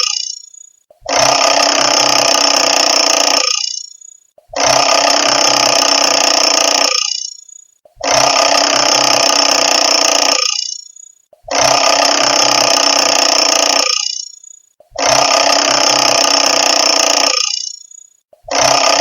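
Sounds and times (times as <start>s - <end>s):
mechanical alarm clock ringing: 0.0s - 19.0s.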